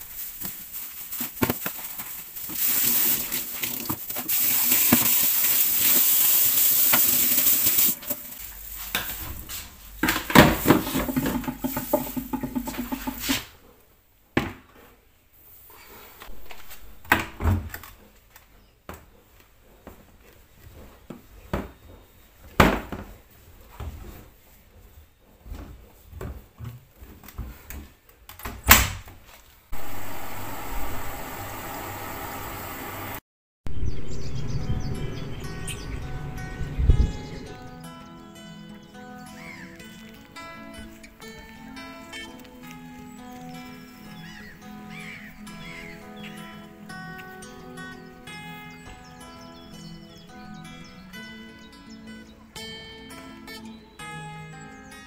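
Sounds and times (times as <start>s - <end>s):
steady hiss: 0.0s - 13.4s
dishes and utensils clattering: 1.9s - 13.5s
appliance whirring hum: 29.8s - 33.2s.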